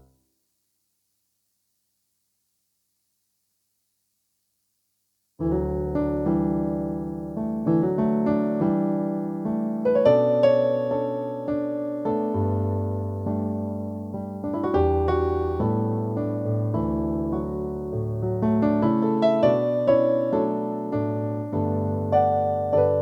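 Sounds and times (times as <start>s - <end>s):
keyboard playing piano chords: 5.5s - 23.0s.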